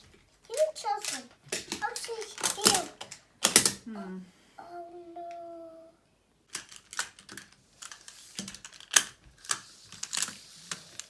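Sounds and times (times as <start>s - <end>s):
plastic tiles clicking together: 0.5s - 3.8s.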